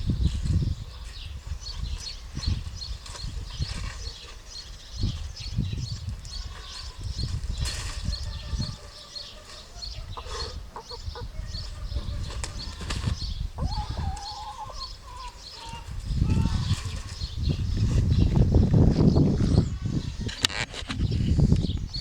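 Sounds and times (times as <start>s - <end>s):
hen clucking: 6.3s - 17.1s
hen squawking: 8.3s - 12.8s
hen flapping wings: 12.2s - 13.2s.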